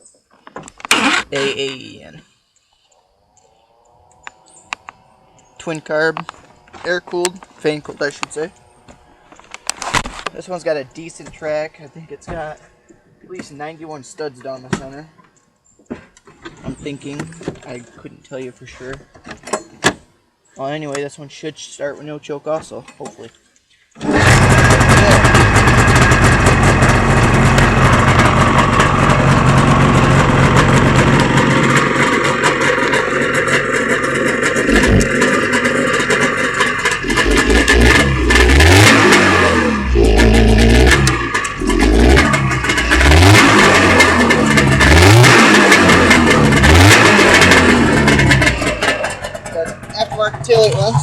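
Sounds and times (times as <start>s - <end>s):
snowmobile engine running: 24.0s - 51.0s.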